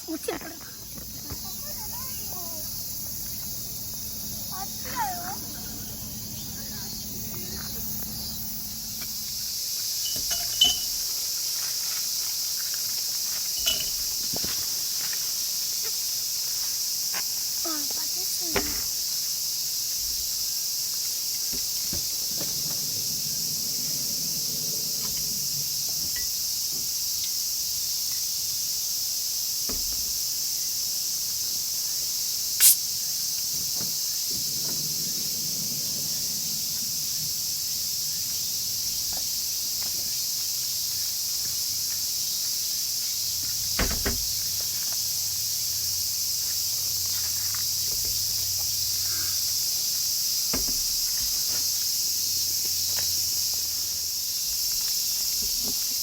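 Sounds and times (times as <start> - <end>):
insects chirping: 0.0 - 56.0
sharp click: 32.6 - 32.8.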